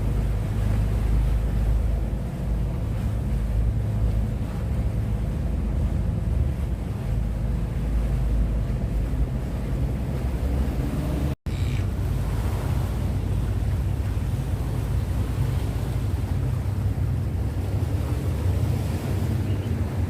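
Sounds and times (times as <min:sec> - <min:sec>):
wind blowing over microphone: 0:00.0 - 0:20.0.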